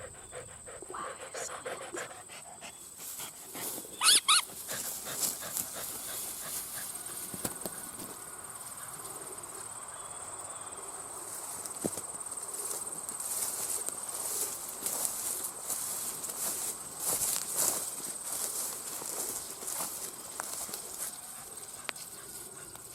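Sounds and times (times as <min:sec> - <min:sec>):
dog yelping: 0:04.0 - 0:04.6.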